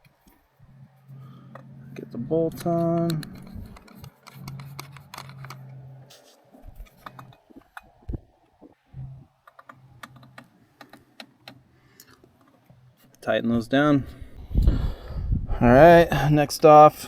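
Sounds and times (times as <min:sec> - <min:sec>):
faint low hum: 0:00.0 - 0:17.0
metal clicks and taps: 0:02.6 - 0:05.8, 0:06.8 - 0:08.2, 0:09.4 - 0:12.6.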